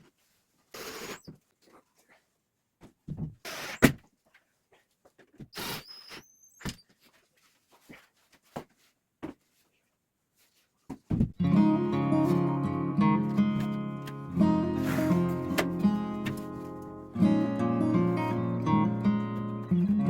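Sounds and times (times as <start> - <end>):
knocks and thuds: 2.8 - 4.1, 10.9 - 11.4
music: 11.4 - 20.0
brief scrapes: 14.8 - 15.3
squeaky scrape: 14.8 - 15.4.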